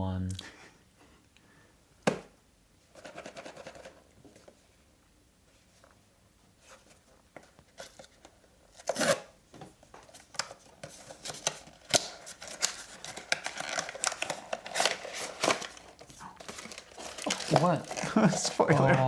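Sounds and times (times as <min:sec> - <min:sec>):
packaging tearing: 0:08.8 - 0:09.3, 0:10.8 - 0:18.6
packaging crinkling and rustling: 0:09.9 - 0:18.7.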